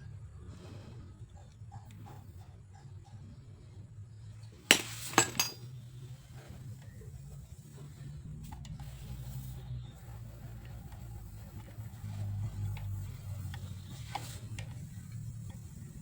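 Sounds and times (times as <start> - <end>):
small metal pieces clinking: 4.7 - 5.7.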